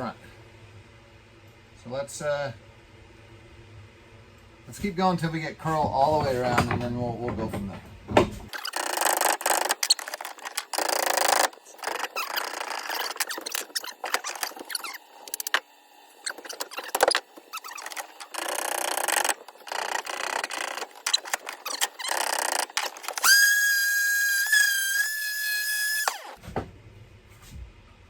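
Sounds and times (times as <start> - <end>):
hand tool scraping wood: 16.2 - 23.5
high-pitched squeal: 16.2 - 26.4.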